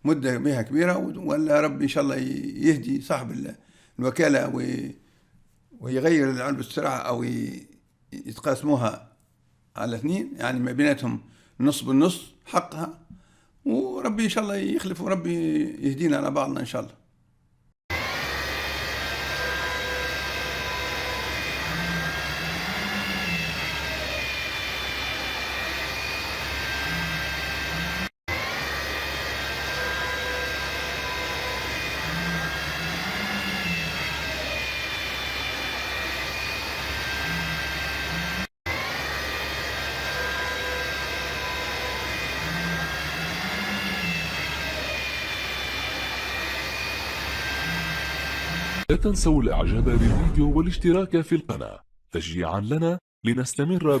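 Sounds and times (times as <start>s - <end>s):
transmission whining: 17.9s - 48.8s.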